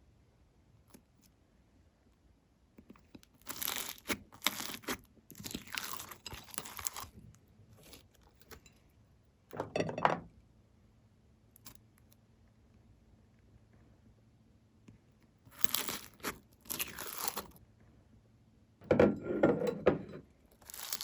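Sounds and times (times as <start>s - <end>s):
plastic bag crinkling and tearing: 3.4s - 7.2s, 15.5s - 17.6s, 20.6s - 21.0s.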